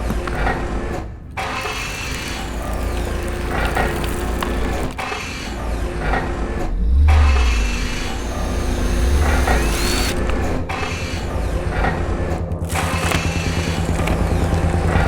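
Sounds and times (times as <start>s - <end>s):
grinding crumbling debris: 1.3s - 15.0s
deep continuous rumble: 5.6s - 15.0s
deep boom: 6.6s - 12.3s.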